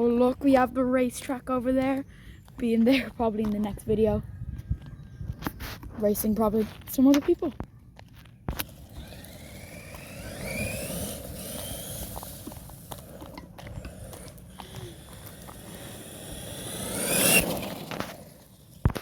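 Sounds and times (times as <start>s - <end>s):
wheels clicking and scraping: 4.6s - 19.0s
rc car motor whining: 8.5s - 19.0s.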